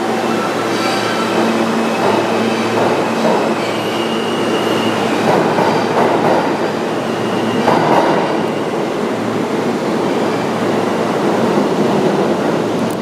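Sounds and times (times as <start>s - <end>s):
subway train rumbling: 0.0s - 13.0s
wheel squeal: 0.3s - 5.9s, 7.0s - 7.9s.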